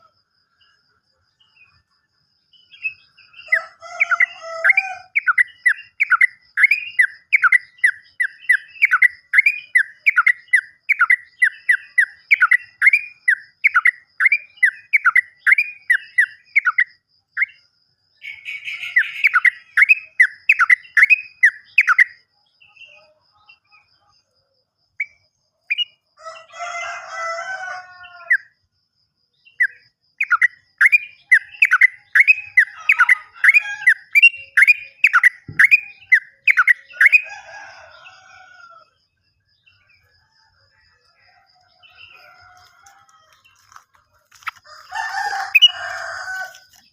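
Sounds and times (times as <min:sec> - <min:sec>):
bird whistling repeated notes: 0:29.5 - 0:37.3.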